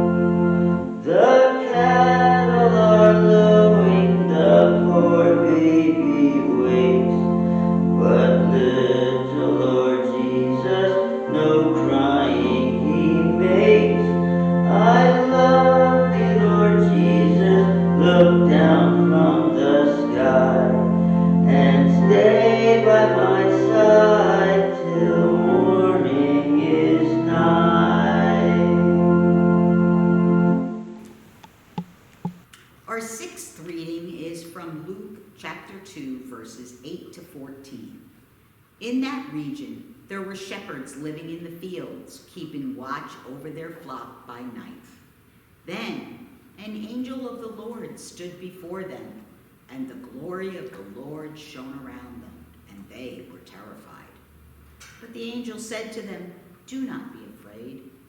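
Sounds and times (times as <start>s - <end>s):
person singing a hymn: 0.0s - 31.0s
sustained keyboard chords: 0.0s - 31.1s.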